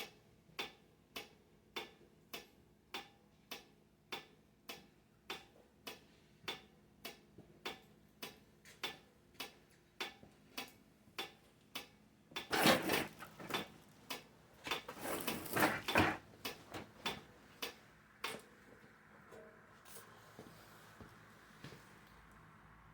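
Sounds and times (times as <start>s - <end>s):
rustling and handling noise: 12.5s - 17.6s.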